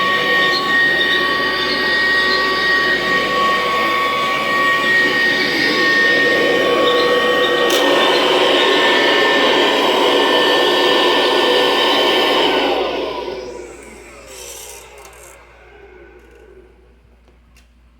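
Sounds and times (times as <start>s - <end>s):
vacuum cleaner whining: 0.0s - 17.5s.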